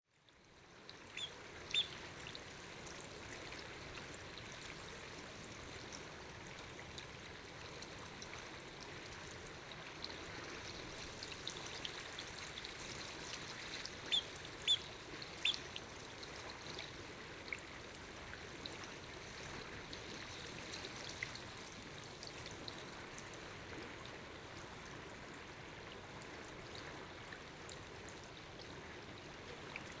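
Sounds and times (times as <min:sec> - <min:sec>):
sandpiper piping calls: 0:01.2 - 0:02.0, 0:14.1 - 0:15.6.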